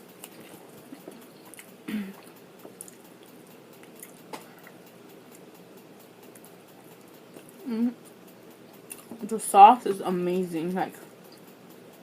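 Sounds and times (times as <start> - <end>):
person chewing food: 0.0 - 9.2
person humming: 1.9 - 2.3, 7.6 - 8.1.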